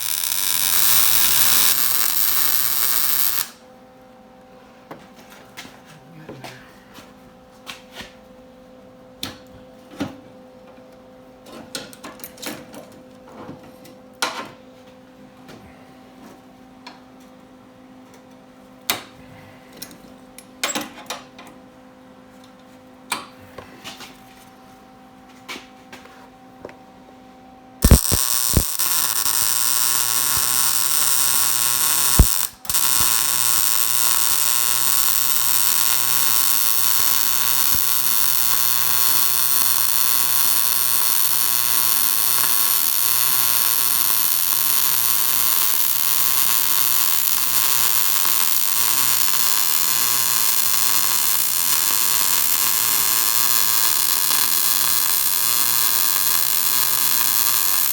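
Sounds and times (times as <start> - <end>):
welder crackling hiss: 0.0 - 3.6, 27.8 - 57.9
electrical hum: 23.3 - 57.9.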